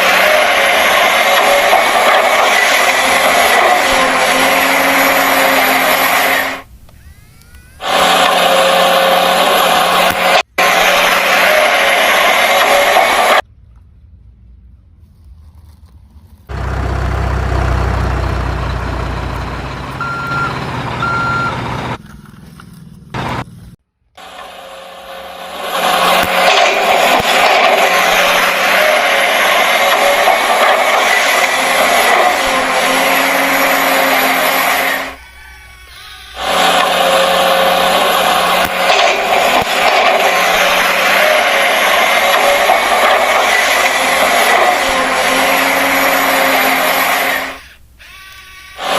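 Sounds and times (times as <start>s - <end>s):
truck engine running: 0.0s - 7.0s, 7.8s - 15.0s, 16.2s - 35.2s, 36.4s - 48.0s
toy electric motors whirring: 0.0s - 13.4s, 25.4s - 48.9s
reversing beeps: 19.9s - 21.6s.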